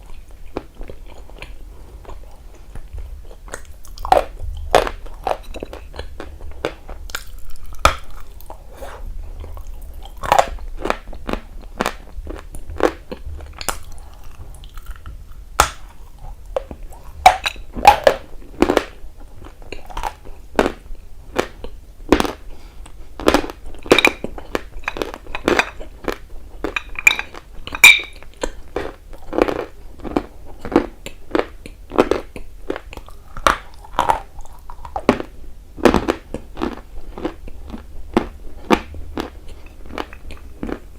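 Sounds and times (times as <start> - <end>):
person chewing crunchy food: 0.0 - 40.9.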